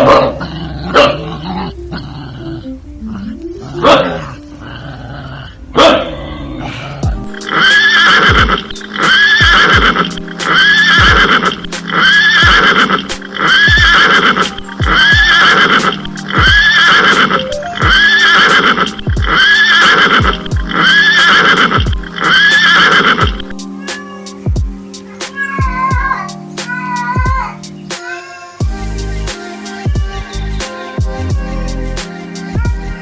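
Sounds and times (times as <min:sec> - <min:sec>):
background music: 0:00.0 - 0:33.0
horse whinnying: 0:07.3 - 0:24.4, 0:25.2 - 0:26.3.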